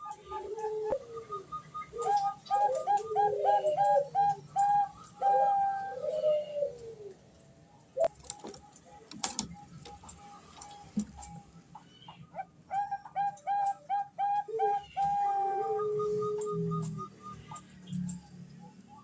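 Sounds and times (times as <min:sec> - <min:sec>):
dove cooing: 0:00.0 - 0:07.3, 0:12.1 - 0:19.0.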